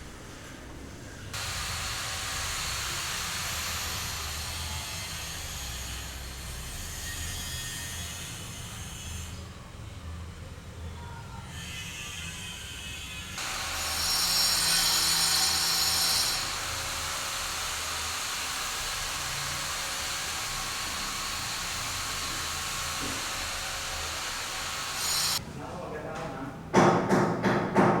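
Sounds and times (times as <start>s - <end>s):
power tool running: 1.4s - 6.4s, 13.4s - 25.4s.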